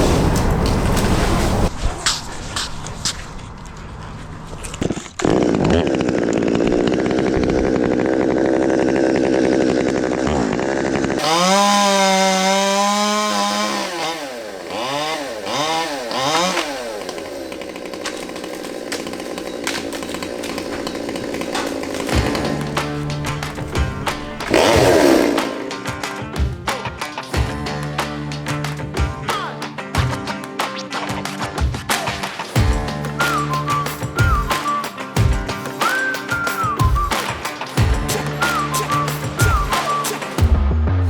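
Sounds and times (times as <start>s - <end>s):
chainsaw cutting wood: 5.0s - 26.2s, 31.9s - 40.5s.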